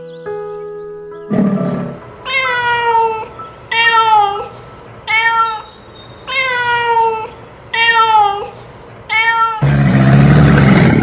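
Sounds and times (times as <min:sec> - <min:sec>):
cat meowing: 0:02.2 - 0:09.6.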